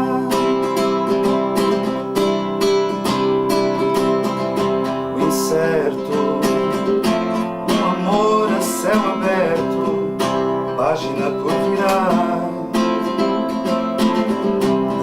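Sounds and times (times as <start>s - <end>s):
man singing: 0.0s - 0.9s, 5.0s - 13.3s
acoustic guitar strummed: 0.0s - 15.0s.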